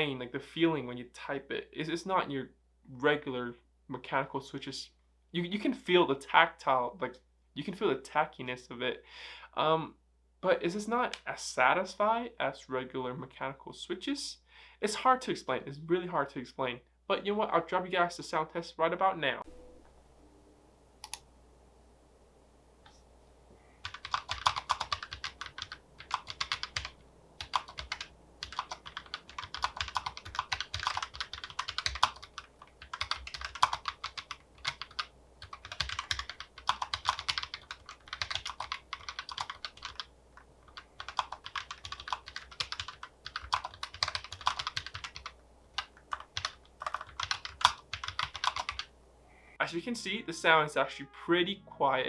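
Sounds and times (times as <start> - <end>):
mechanical keyboard typing: 23.8 - 48.9.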